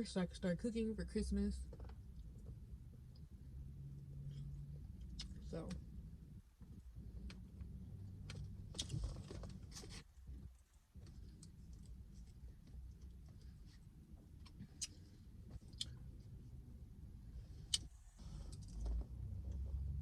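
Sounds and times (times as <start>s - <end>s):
faint low hum: 0.0s - 20.0s
person chewing food: 4.3s - 5.4s, 11.0s - 16.2s
sharp mouth clicks: 5.0s - 5.4s, 14.4s - 15.0s.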